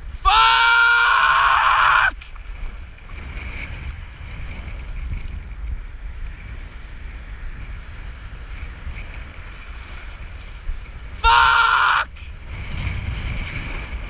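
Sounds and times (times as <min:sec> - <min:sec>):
open water noise: 0:00.0 - 0:14.0
wind buffeting the microphone: 0:00.0 - 0:14.0.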